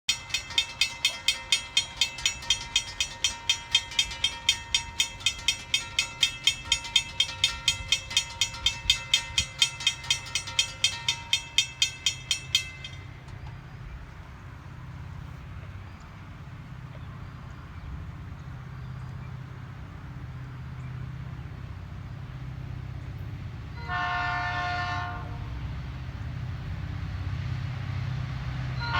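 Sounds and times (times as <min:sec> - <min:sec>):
railroad crossing bell ringing: 0:00.1 - 0:15.1
low steady rumble: 0:00.1 - 0:18.4.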